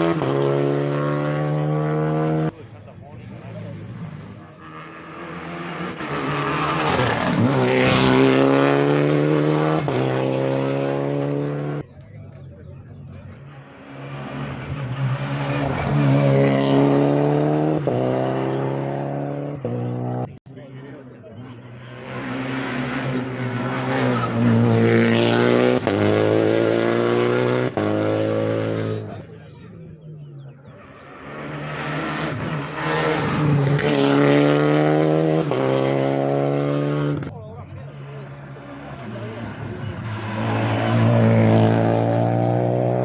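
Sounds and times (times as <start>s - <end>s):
rally car engine passing at high revs: 0.0s - 43.0s.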